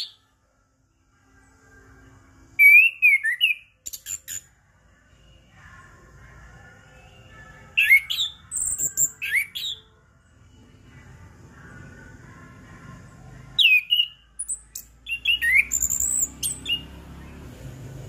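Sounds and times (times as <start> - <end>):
thrush singing whistled notes: 0.0 - 0.3, 2.5 - 4.6, 6.9 - 10.8, 13.4 - 18.0.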